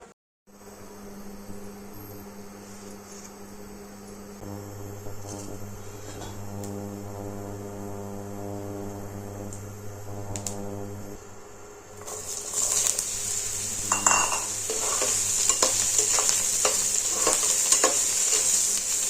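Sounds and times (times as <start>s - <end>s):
electrical hum: 0.5s - 19.0s
faint click: 10.3s - 10.7s.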